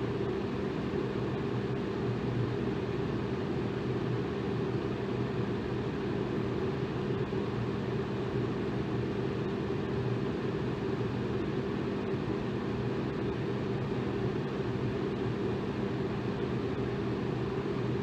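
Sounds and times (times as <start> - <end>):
electric fan air rush: 0.0 - 2.8
faint motor hum: 0.0 - 18.0.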